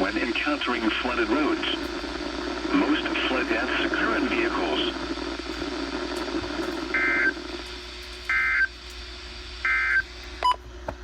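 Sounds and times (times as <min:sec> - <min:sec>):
faint radio hiss: 0:00.0 - 0:07.8.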